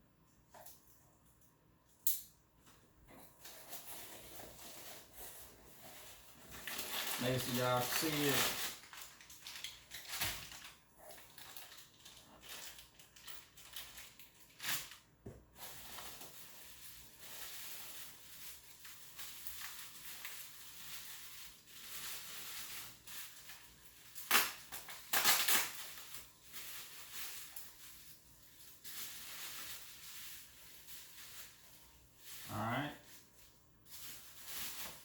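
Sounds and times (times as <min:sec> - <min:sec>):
packaging rustling and crunching: 0:03.3 - 0:35.0.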